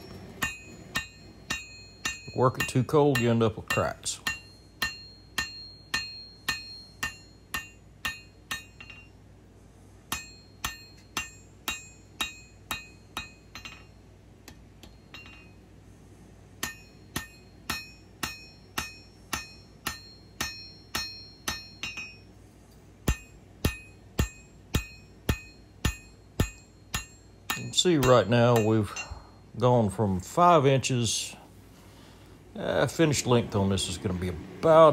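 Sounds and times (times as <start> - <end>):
hammer ringing on anvil: 0.0 - 9.2, 10.1 - 15.6, 16.6 - 22.3, 23.0 - 29.6.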